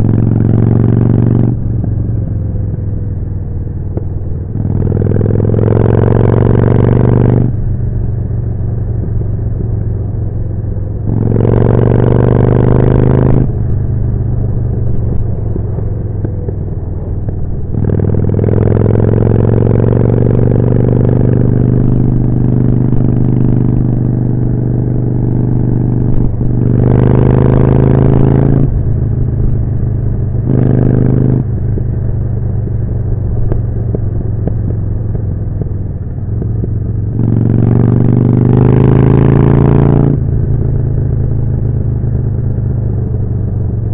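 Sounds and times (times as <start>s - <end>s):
motorcycle engine revving: 0.0s - 43.9s.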